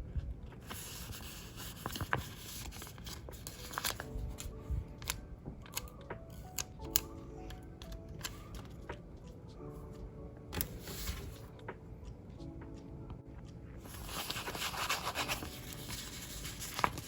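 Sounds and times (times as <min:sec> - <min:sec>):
soft background music: 0:00.0 - 0:17.0
paper rustling: 0:00.6 - 0:05.9, 0:10.6 - 0:11.5, 0:13.8 - 0:17.0.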